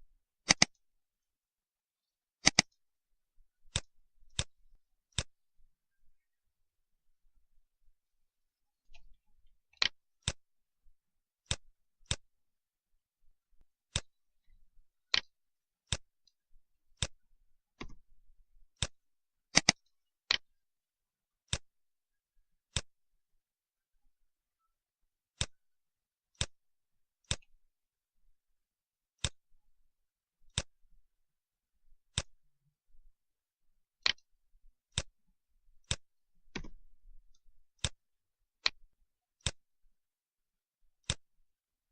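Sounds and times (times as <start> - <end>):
computer mouse clicking: 0.4 - 0.8, 2.4 - 2.8, 3.6 - 5.4, 8.8 - 10.4, 11.4 - 12.3, 13.8 - 17.2, 17.8 - 18.1, 18.7 - 20.5, 21.5 - 21.7, 22.7 - 23.0, 25.3 - 25.6, 26.3 - 26.6, 27.2 - 27.6, 29.2 - 29.4, 30.5 - 30.8, 32.1 - 32.4, 34.0 - 34.3, 34.9 - 35.2, 35.8 - 38.0, 38.6 - 38.8, 39.4 - 39.6, 41.0 - 41.3.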